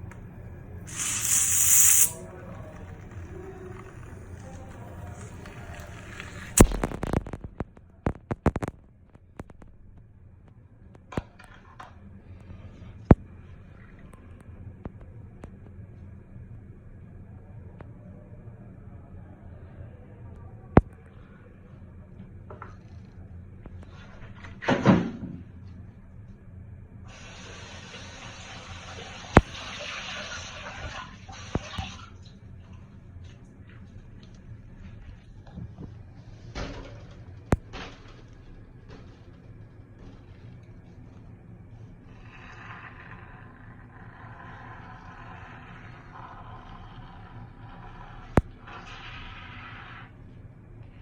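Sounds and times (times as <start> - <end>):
foaming hiss: 0.9 - 2.2
clicks and taps: 6.6 - 8.8.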